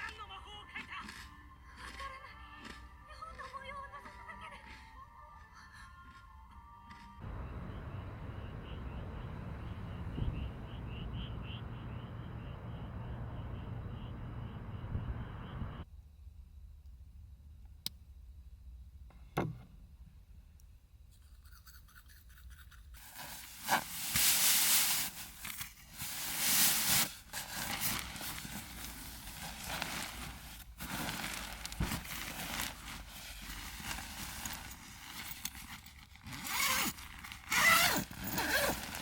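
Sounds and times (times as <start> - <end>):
material rustling and crinkling: 23.0 - 39.0.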